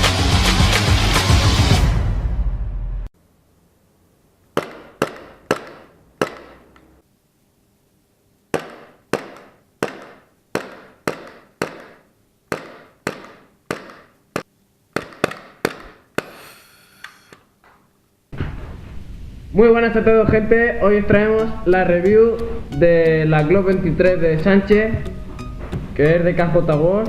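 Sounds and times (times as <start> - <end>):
airsoft pistol shots: 4.6 - 6.7, 8.5 - 14.1.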